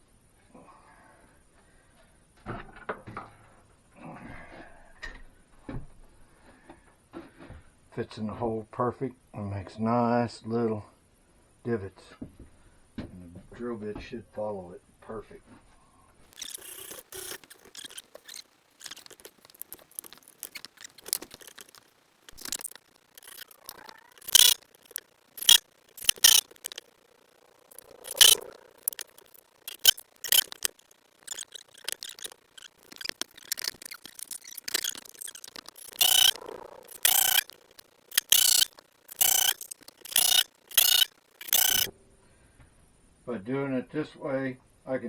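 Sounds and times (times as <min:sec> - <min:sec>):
mechanical bursts of tool work: 0:16.4 - 0:41.9.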